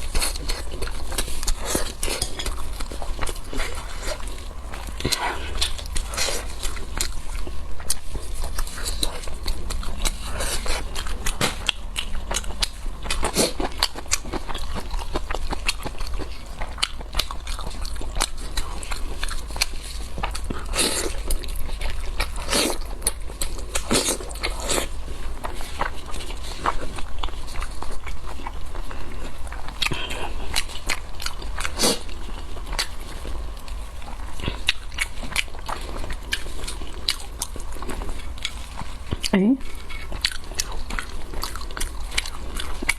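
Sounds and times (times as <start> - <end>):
chewing and biting mouth noises: 0.0 - 42.9
steady low hum: 0.0 - 42.9.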